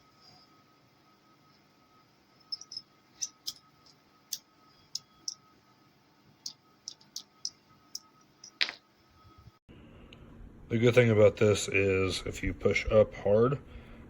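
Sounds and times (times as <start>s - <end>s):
metal parts clicking: 2.5s - 5.4s.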